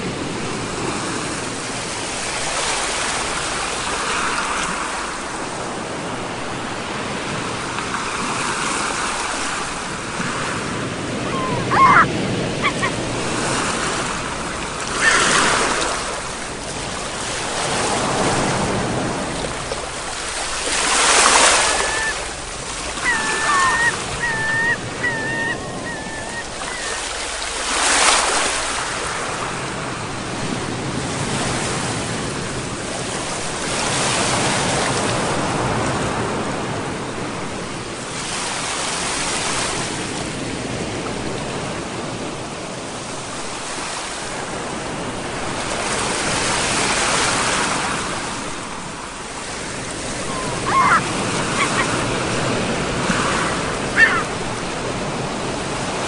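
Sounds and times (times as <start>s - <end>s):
sea waves breaking on shore: 0.0s - 56.0s
brief high calls: 11.2s - 13.0s, 21.4s - 27.1s, 50.2s - 51.9s, 53.9s - 54.4s.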